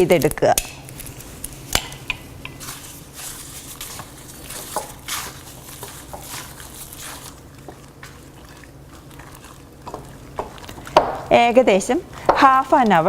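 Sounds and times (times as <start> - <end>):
wet squelching of chicken mixing: 2.6 - 13.0.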